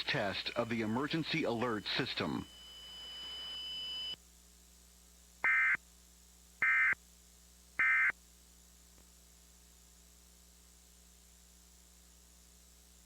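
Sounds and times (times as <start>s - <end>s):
faint steady hum: 0.0s - 13.0s
buzzy digital data tones: 0.2s - 4.2s.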